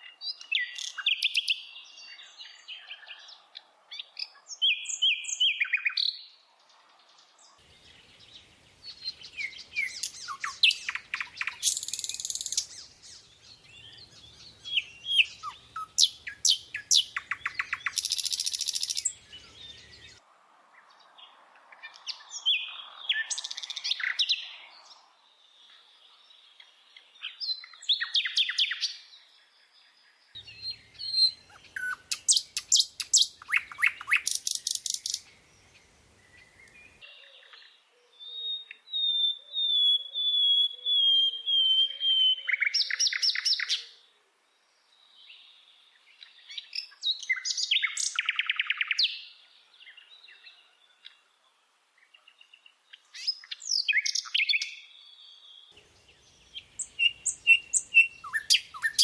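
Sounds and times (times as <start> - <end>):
birds chirping and trilling: 0.0 - 59.0.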